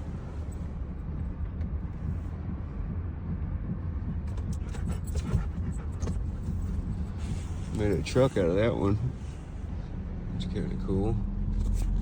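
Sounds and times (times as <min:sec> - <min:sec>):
car rumbling slowly: 0:00.0 - 0:12.0.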